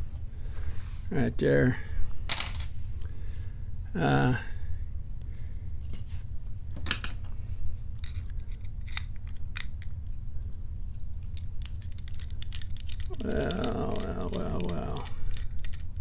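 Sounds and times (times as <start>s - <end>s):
steady low hum: 0.0s - 16.0s
metal clicks of lock picking tools: 14.0s - 16.0s.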